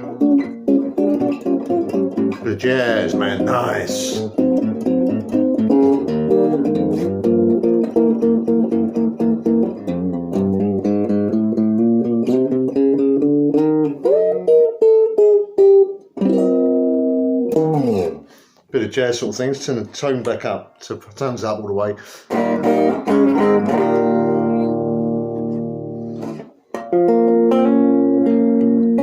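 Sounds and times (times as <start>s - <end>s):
clean electric guitar jazz chords: 0.0s - 18.3s, 22.3s - 29.0s.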